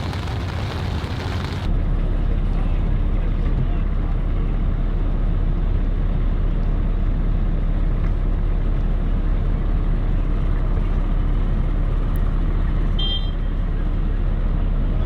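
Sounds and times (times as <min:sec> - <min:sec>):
water churning: 0:00.0 - 0:01.7
boat engine rumbling: 0:00.0 - 0:12.8.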